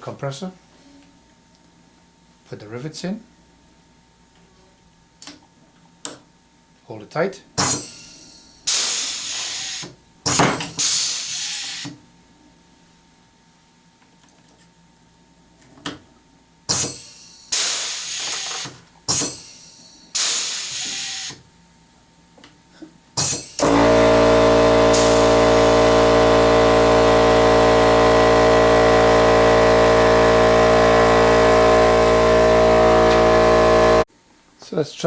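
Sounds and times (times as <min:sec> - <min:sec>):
air compressor motor humming: 0:07.6 - 0:09.9, 0:23.2 - 0:34.1
air riveter hissing: 0:07.6 - 0:09.9, 0:10.8 - 0:11.9, 0:16.7 - 0:21.4, 0:23.2 - 0:34.0.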